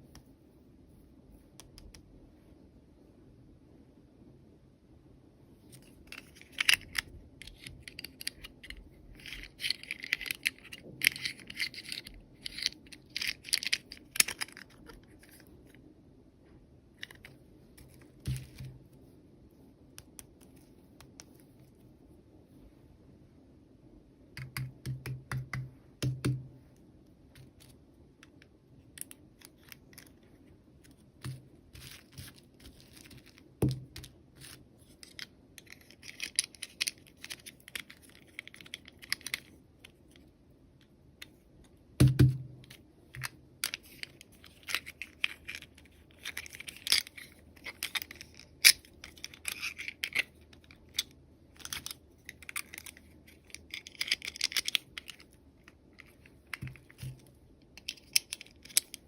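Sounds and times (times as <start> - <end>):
plastic toy pieces clicking: 6.1 - 15.4, 31.2 - 39.6, 43.1 - 55.3, 57.8 - 59.0.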